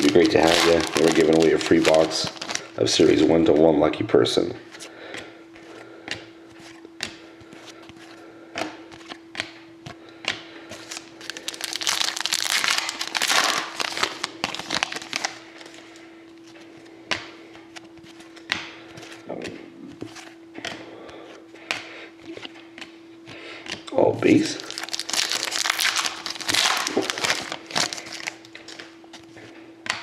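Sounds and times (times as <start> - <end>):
foil wrapper crinkling and tearing: 0.0 - 3.3, 10.8 - 15.7, 24.4 - 28.9
steady hum: 0.0 - 30.0.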